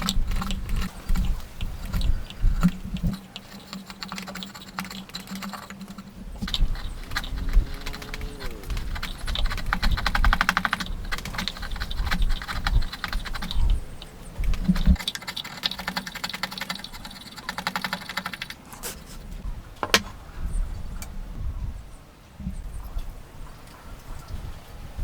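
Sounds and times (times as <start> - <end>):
hand saw cutting wood: 18.5 - 20.2
dull knocks: 19.8 - 20.2.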